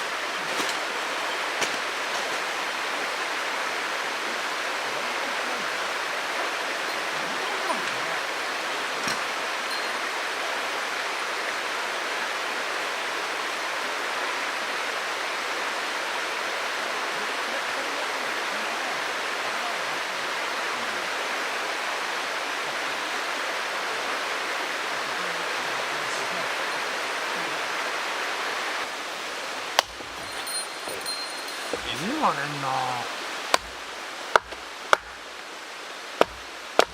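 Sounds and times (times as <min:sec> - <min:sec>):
stream water rushing: 0:00.0 - 0:36.9.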